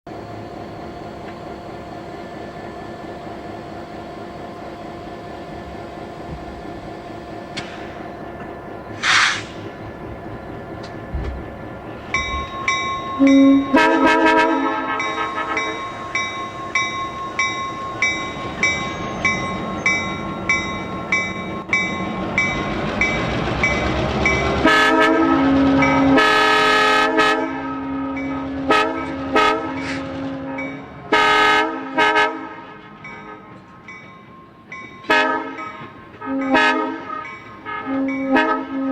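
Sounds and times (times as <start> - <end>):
locomotive running: 0.1 - 38.9
repeated ringing bell: 12.2 - 13.9, 14.9 - 24.6
train air horn blasts: 13.2 - 15.9, 24.6 - 33.6, 35.1 - 38.9.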